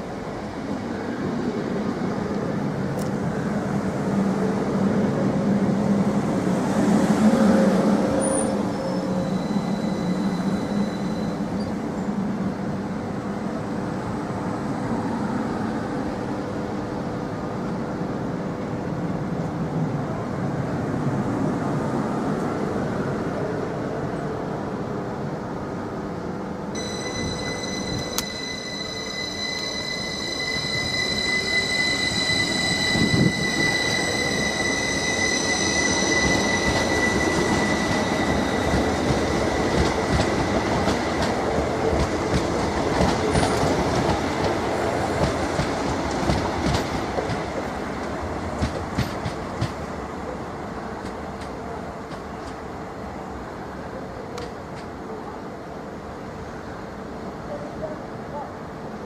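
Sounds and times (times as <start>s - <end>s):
train rumbling: 0.0s - 59.0s
train wheel squeal: 7.2s - 12.1s, 26.8s - 41.2s.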